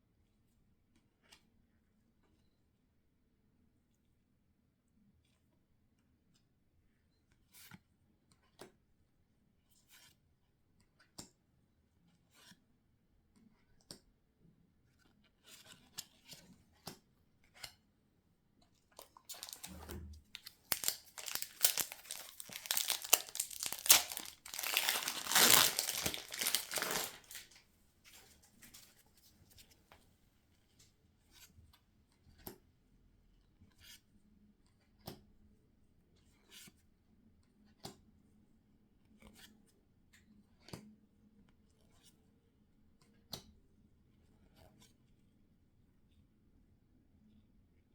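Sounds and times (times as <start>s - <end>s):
foil wrapper tearing and crinkling: 19.0s - 19.8s, 20.4s - 27.5s
cards and packaging rustling: 19.0s - 27.6s.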